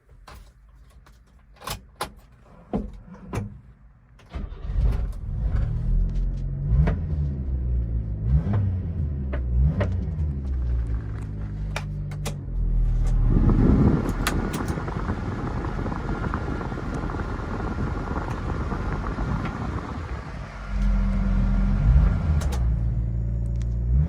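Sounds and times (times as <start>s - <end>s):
truck engine running: 8.9s - 24.0s.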